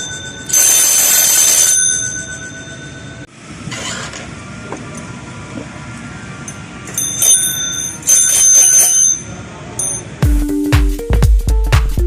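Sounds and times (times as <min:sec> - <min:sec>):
electric alarm bell ringing: 0:00.0 - 0:03.3, 0:06.5 - 0:10.2.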